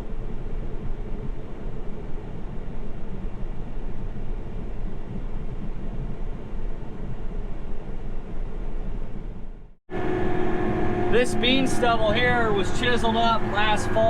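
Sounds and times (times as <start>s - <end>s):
vehicle engine running: 9.9s - 14.0s.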